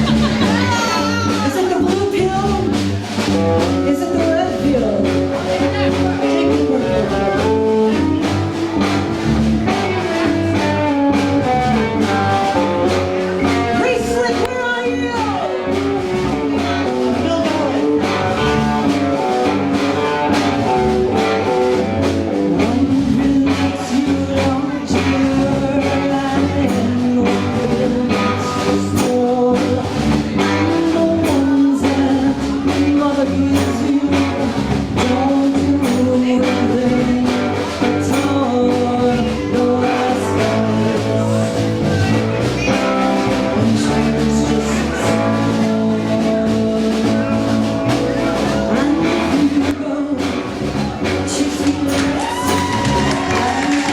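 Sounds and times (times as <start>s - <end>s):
blues rock band playing: 0.0s - 53.9s
person singing: 0.0s - 53.9s.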